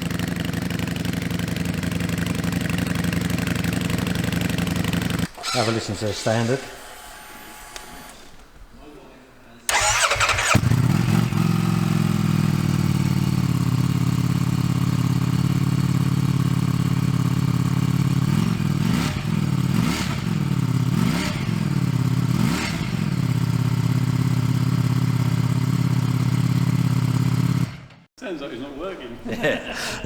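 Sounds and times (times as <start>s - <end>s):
motorcycle engine idling and revving: 0.0s - 5.3s, 9.7s - 28.1s.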